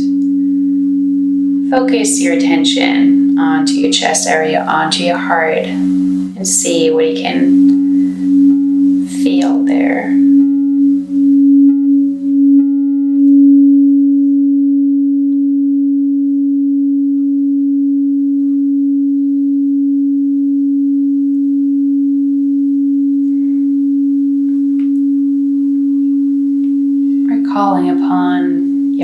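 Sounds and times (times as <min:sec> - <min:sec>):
singing bowl tone: 0:00.0 - 0:29.0.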